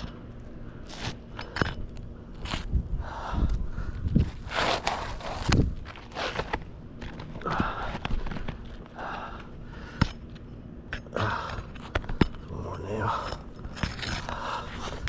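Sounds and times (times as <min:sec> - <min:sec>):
gritty scrapes on roof shingles: 0:04.2 - 0:08.8, 0:13.1 - 0:15.0.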